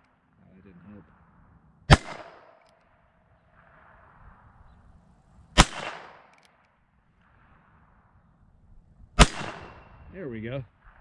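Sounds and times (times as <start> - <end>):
revolver gunshot with echo: 1.9 - 2.6, 5.5 - 6.4, 9.2 - 10.1.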